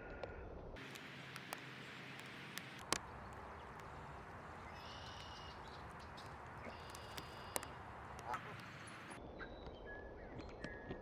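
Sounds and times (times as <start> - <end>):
high chirping call: 0.8 - 9.2
sharp clicks: 0.8 - 9.2
steady hiss: 0.8 - 9.2.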